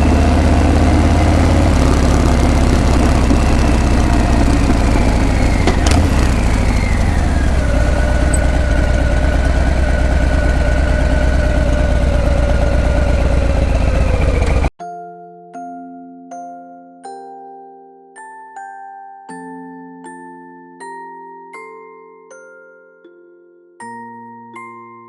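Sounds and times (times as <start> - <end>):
motorcycle idling: 0.0 - 14.7
sharp click: 1.5 - 8.9.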